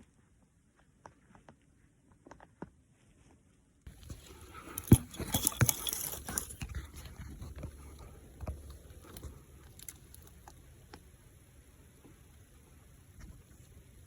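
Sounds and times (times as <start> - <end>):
close rustling: 3.9 - 10.4.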